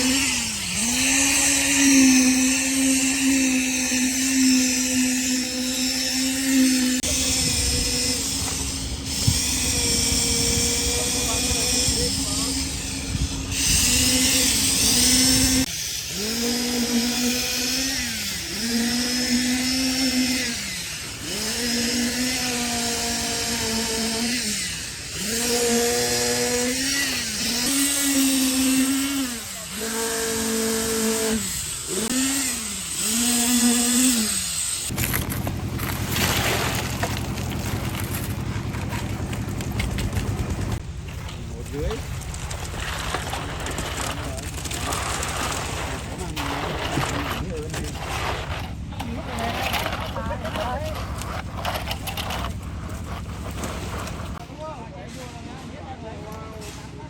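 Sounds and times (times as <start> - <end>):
motor revving: 0.0 - 40.8.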